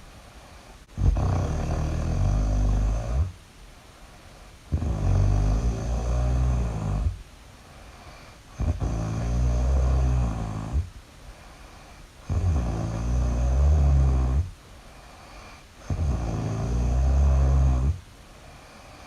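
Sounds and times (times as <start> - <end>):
loud rattling snoring: 0.9 - 3.4, 4.7 - 7.2, 8.0 - 10.9, 11.7 - 18.0.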